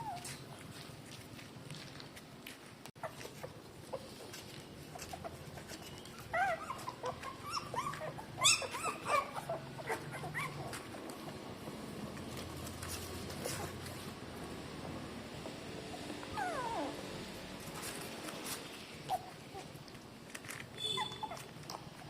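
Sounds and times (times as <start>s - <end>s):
puppies crying: 4.9s - 11.0s, 16.0s - 17.1s, 21.0s - 21.5s.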